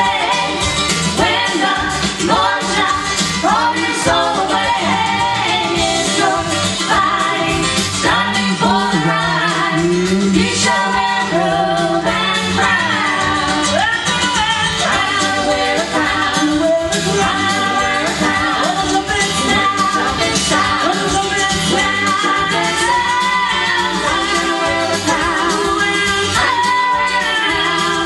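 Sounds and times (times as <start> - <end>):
gospel group singing: 0.0 - 28.0.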